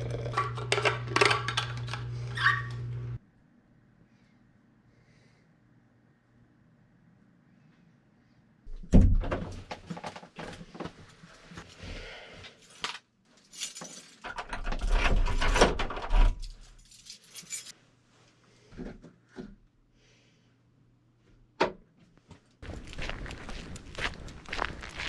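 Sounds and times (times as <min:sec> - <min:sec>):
handling noise clattering and rustling: 0:12.5 - 0:17.7.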